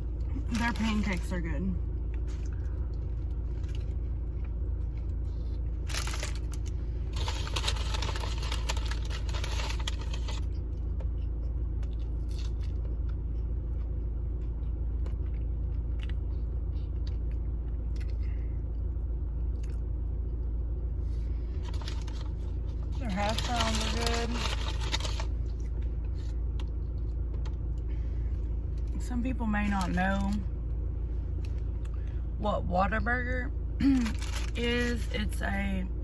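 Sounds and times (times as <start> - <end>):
low hum: 0.0 - 36.0
chewing and crunching food: 1.9 - 29.0, 33.8 - 35.2.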